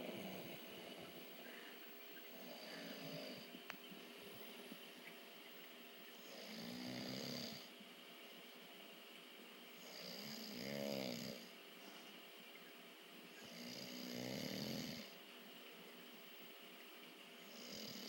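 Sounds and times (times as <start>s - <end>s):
person snoring: 2.4s - 3.5s, 6.2s - 7.7s, 9.8s - 11.5s, 13.4s - 15.2s, 17.5s - 18.0s.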